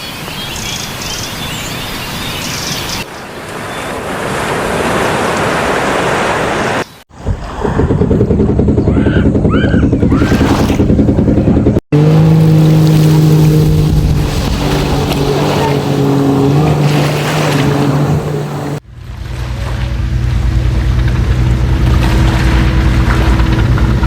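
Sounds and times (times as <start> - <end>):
waves washing: 0.0 - 8.5, 10.1 - 24.0
motorboat engine: 6.1 - 24.0.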